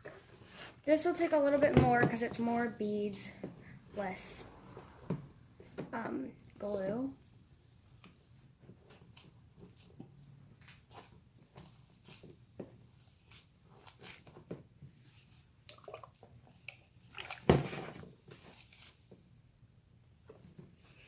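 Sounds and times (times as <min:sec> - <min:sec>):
slime squishing by hand: 0:07.2 - 0:17.8.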